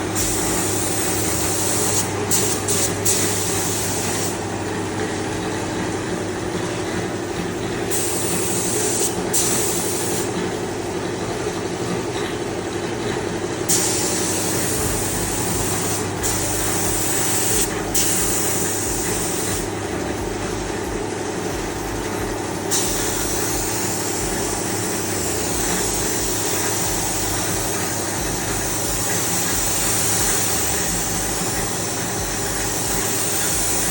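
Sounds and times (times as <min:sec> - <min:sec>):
paint spray gun hissing: 0:00.0 - 0:04.5, 0:07.9 - 0:10.3, 0:13.7 - 0:19.7, 0:22.7 - 0:33.9
compressor motor hum: 0:00.0 - 0:33.9.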